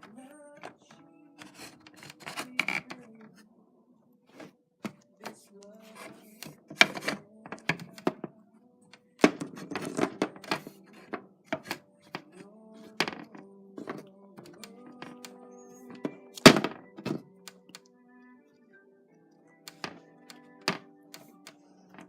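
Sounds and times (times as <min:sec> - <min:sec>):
soft background music: 0:00.0 - 0:22.0
plastic toy figures knocking: 0:06.7 - 0:08.3, 0:15.9 - 0:17.2.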